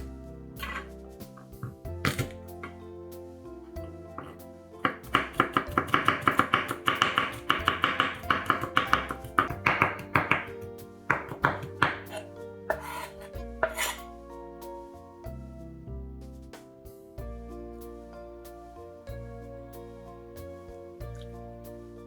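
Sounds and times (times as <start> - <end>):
background music: 0.0 - 22.0
knife chopping on cutting board: 0.6 - 0.9, 2.0 - 2.4, 4.9 - 14.0.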